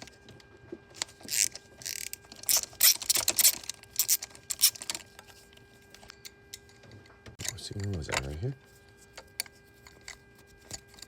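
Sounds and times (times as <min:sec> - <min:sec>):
ratchet wrench clicking: 0:01.3 - 0:05.0.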